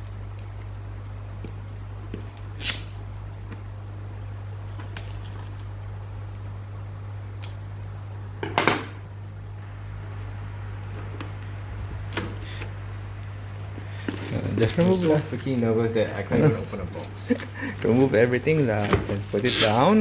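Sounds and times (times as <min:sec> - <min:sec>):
steady low hum: 0:00.0 - 0:20.0
cardboard packaging rustling: 0:13.6 - 0:16.3, 0:16.9 - 0:20.0.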